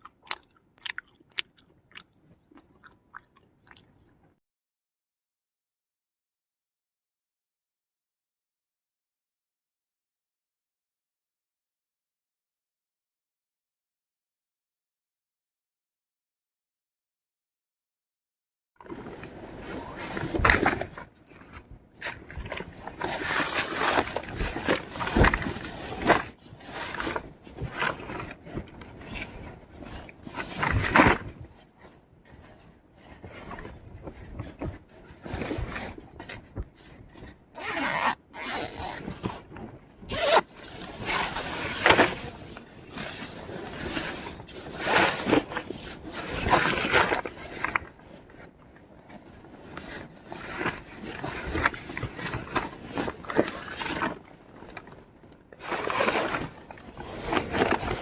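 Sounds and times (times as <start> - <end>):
rustling and scraping: 18.8 - 58.0.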